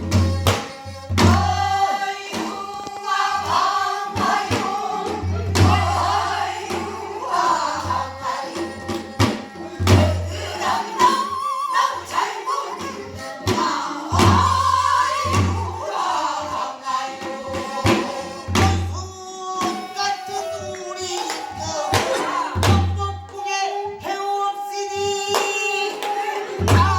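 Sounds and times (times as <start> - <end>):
sharp drum strokes: 0.0 - 11.3, 26.6 - 26.9
folk singing with wavering notes: 0.0 - 26.9.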